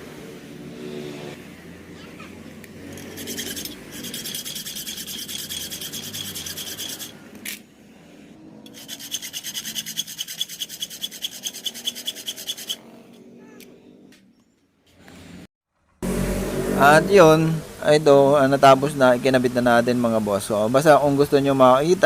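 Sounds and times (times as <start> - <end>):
hand scraping metal: 2.9 - 7.2, 8.7 - 12.8.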